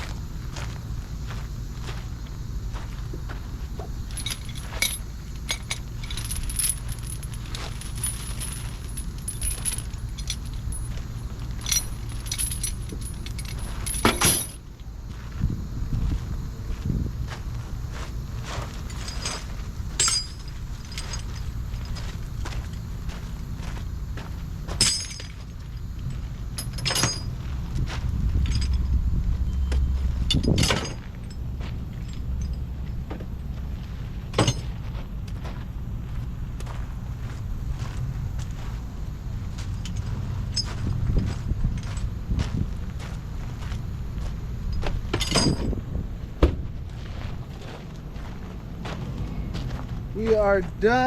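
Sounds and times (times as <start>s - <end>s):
low engine rumble: 0.0s - 51.0s
metal chains clinking: 4.1s - 14.6s, 18.8s - 22.8s, 24.7s - 33.7s, 34.3s - 34.8s, 39.6s - 41.0s, 41.7s - 42.1s, 44.7s - 45.7s
metal gear clanking and jangling: 4.1s - 14.6s, 18.5s - 22.9s, 24.7s - 35.4s, 39.7s - 42.2s, 44.7s - 45.8s
sharp ringing metal clanks: 11.6s - 14.6s, 18.9s - 21.4s, 24.7s - 25.4s, 26.6s - 27.4s, 34.3s - 34.7s, 45.2s - 45.7s
loud metal clank: 13.5s - 14.6s, 24.7s - 25.4s, 34.3s - 34.8s.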